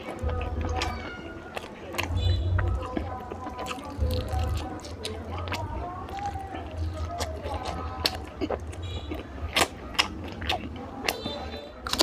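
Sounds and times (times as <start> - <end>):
wet chewing and lip-smacking: 0.0 - 12.0.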